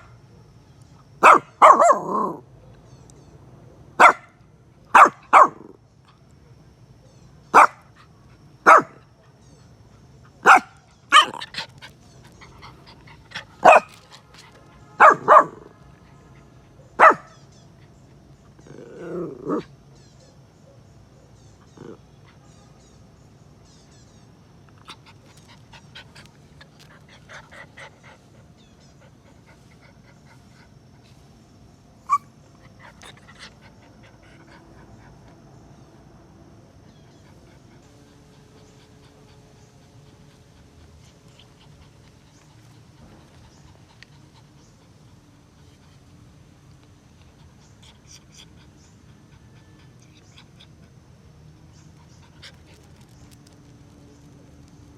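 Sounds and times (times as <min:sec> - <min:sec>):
dog barking: 0:01.2 - 0:02.4, 0:04.0 - 0:05.7, 0:07.5 - 0:07.9, 0:08.6 - 0:09.0, 0:10.4 - 0:11.7, 0:13.6 - 0:14.0, 0:14.8 - 0:15.8, 0:16.8 - 0:17.4.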